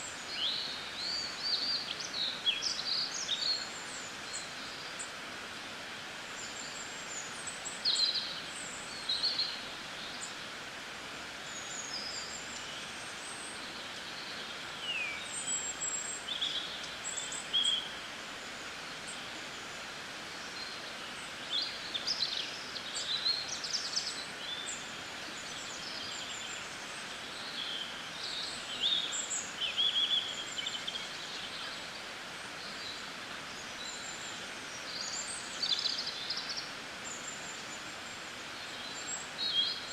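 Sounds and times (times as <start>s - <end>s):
steady background hiss: 0.0s - 39.9s
small birds chirping: 11.3s - 39.9s.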